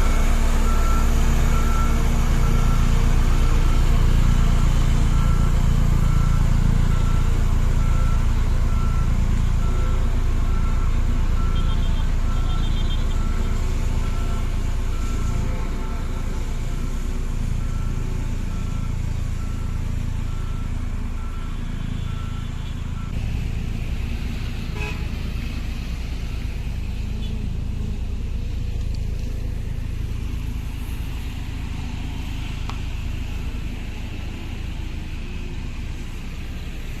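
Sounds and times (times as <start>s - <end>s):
beeping alarm: 0.0s - 23.2s
road roller engine rumbling: 0.0s - 37.0s.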